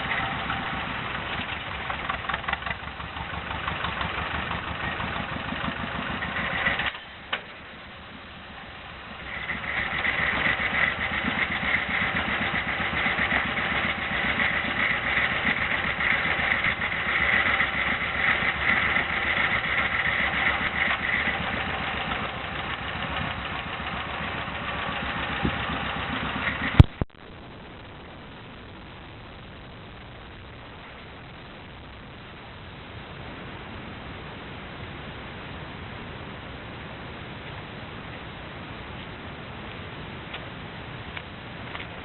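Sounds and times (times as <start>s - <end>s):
engine running steadily: 0.0s - 42.0s
high whine: 6.8s - 39.5s.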